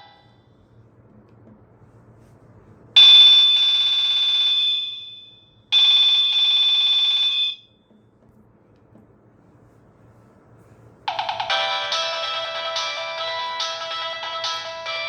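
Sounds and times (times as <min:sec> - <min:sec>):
mobile phone ringtone: 0:11.1 - 0:15.0.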